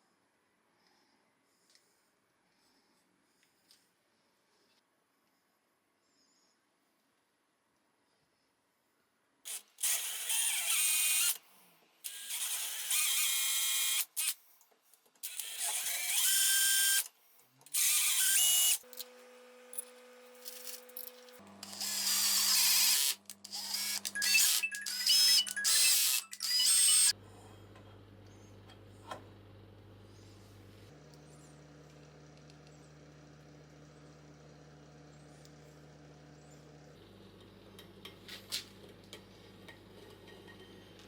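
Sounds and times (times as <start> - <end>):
power tool whining on metal: 9.5 - 11.4, 12.1 - 14.3, 17.7 - 27.2.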